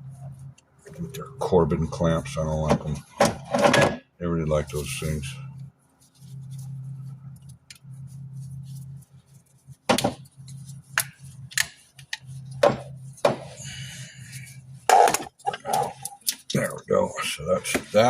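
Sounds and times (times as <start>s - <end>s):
steady low hum: 0.0s - 18.0s.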